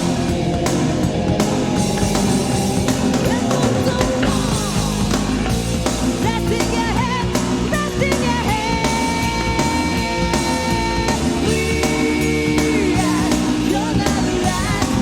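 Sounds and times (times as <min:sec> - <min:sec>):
heavy metal music: 0:00.0 - 0:15.0.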